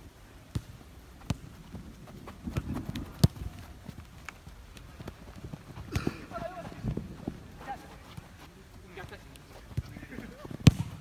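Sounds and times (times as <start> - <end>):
shoes tapping on court: 0.5 - 11.0
ball being kicked: 2.4 - 3.7, 5.8 - 7.0, 9.7 - 11.0.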